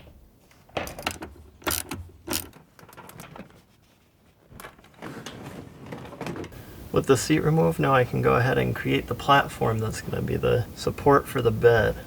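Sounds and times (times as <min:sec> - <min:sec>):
metal frame clunks and rattles: 0:00.0 - 0:03.7, 0:04.5 - 0:06.6.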